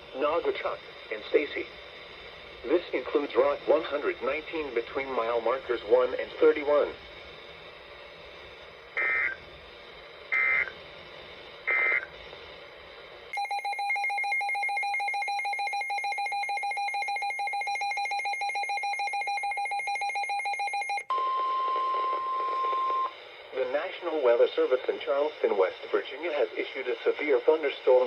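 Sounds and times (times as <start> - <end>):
steady single-pitch alarm tone: 9.0 - 9.4, 10.4 - 10.7, 11.7 - 12.1, 13.4 - 23.1
digital data bursts: 10.3 - 10.7, 11.7 - 12.1.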